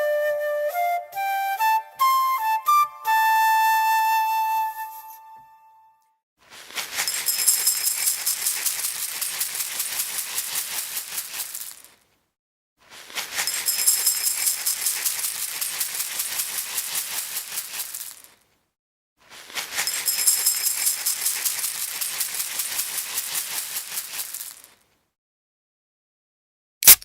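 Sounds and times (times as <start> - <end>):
object rattling from shaking: 6.8 - 12.0, 13.2 - 18.4, 19.5 - 24.8.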